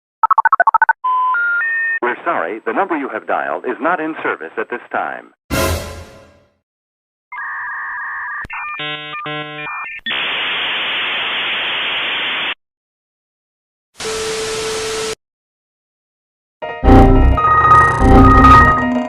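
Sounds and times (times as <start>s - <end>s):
modem tones: 7.4s - 10.4s, 16.8s - 19.0s
static with steady tone: 8.8s - 12.6s
switching beeping tones: 16.8s - 19.0s.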